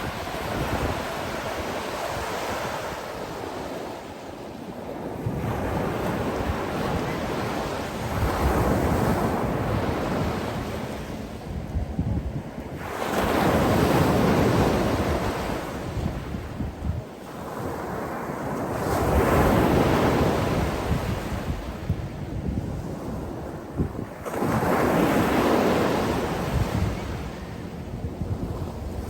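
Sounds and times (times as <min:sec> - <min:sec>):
sea waves breaking: 0:00.0 - 0:11.6
wind noise on microphone: 0:00.0 - 0:29.0.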